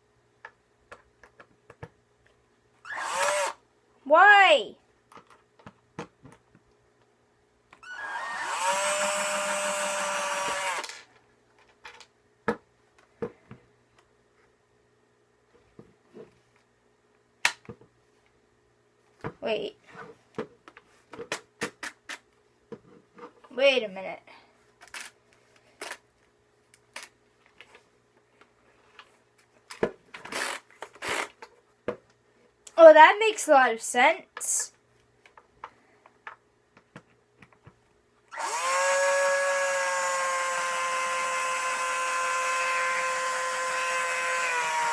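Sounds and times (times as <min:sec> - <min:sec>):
power drill motor spinning: 0:02.8 - 0:03.6, 0:07.8 - 0:11.0, 0:30.3 - 0:31.4, 0:38.3 - 0:44.9.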